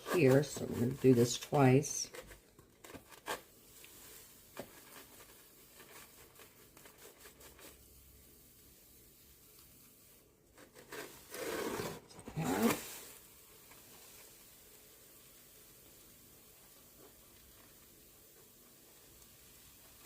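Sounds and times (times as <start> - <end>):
powder scraping and rustling: 0.0 - 20.0.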